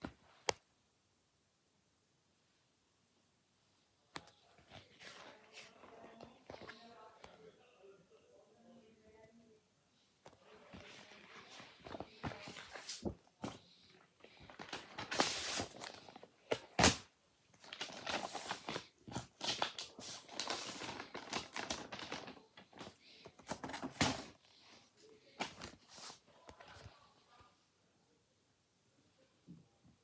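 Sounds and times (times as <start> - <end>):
packaging rustling and scraping: 14.3 - 17.0, 17.6 - 24.4.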